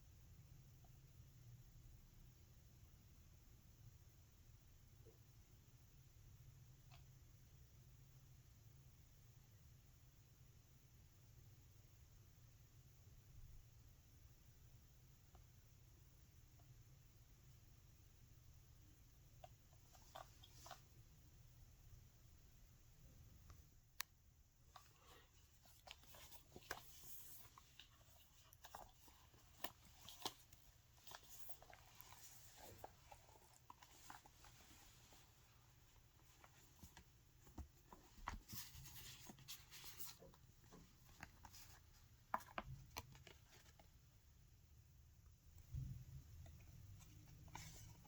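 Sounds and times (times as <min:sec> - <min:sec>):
paper rustling: 0:24.8 - 0:44.0, 0:47.0 - 0:48.0.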